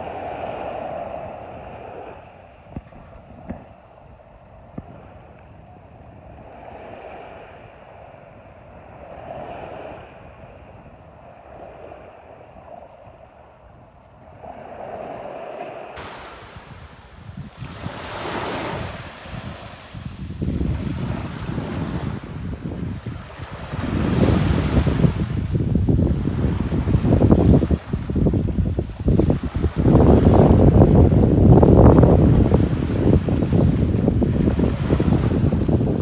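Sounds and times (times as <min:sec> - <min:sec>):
waves washing onto beach: 0:14.6 - 0:36.0.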